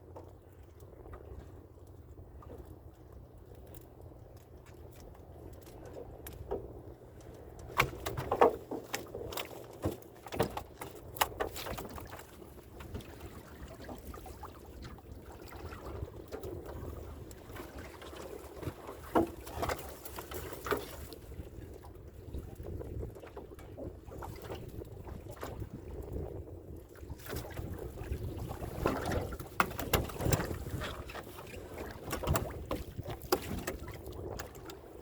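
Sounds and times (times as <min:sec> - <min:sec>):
knocks aboard boat: 0:05.8 - 0:14.2, 0:17.5 - 0:21.1, 0:27.2 - 0:35.0.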